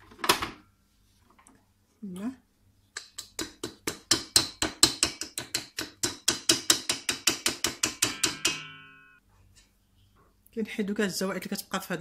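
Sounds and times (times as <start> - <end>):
metal whisk tapping bowl rim: 4.1 - 8.8.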